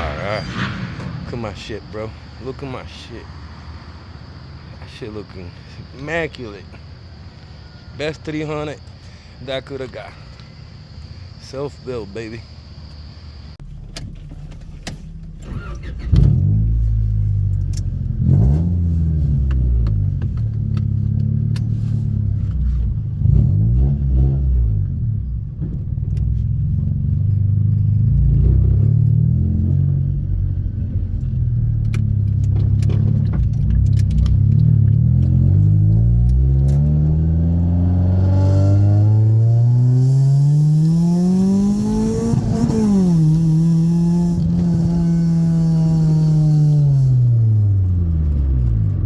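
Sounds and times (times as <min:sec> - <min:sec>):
car engine revving: 0:15.2 - 0:25.1, 0:27.0 - 0:49.0.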